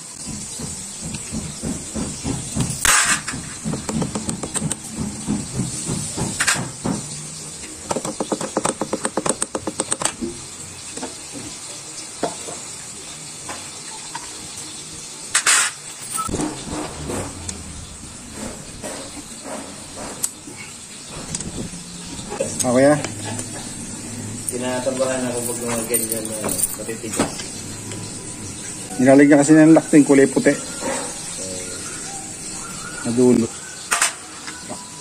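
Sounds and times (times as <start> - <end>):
hand tools knocking and scraping: 0.2 - 7.2, 7.9 - 10.2, 15.4 - 28.0.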